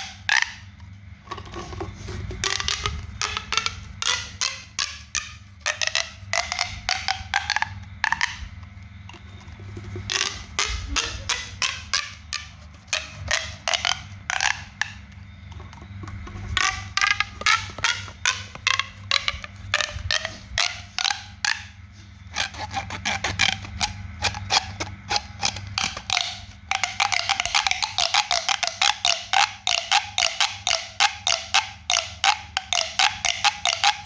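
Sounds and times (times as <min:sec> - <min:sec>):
low steady hum: 0:00.0 - 0:34.0
pop toy popping: 0:02.4 - 0:08.5, 0:10.1 - 0:15.0, 0:22.3 - 0:34.0.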